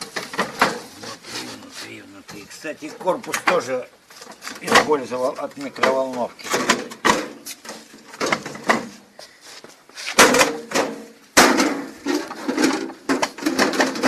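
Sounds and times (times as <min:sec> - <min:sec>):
sheet-metal casing clattering: 0:02.3 - 0:09.0, 0:10.2 - 0:14.0.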